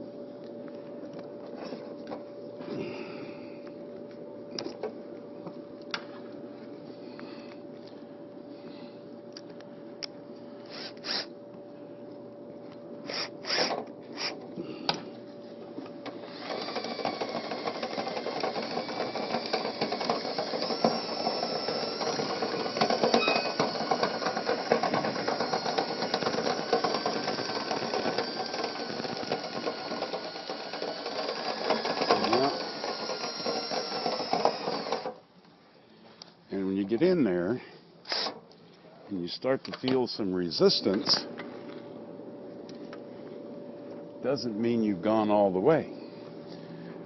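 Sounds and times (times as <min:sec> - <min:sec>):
drill motor whine: 0:10.7 - 0:11.3, 0:13.0 - 0:14.4, 0:16.0 - 0:35.2.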